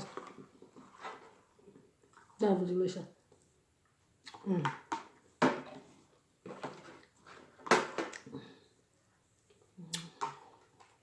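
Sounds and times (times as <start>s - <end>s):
lip smacks: 9.8s - 10.3s.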